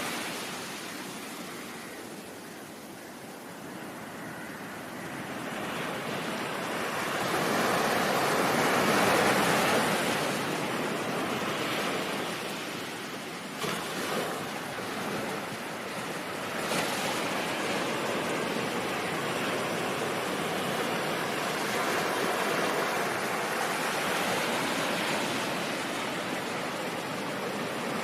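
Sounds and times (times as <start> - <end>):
ocean waves washing in: 0.0 - 28.0.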